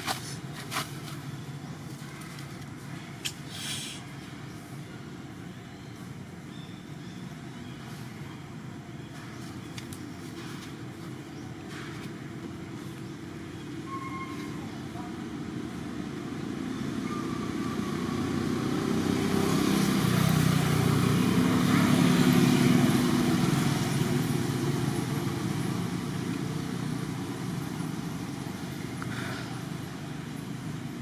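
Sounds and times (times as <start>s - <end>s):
motor vehicle passing by: 16.2s - 31.0s.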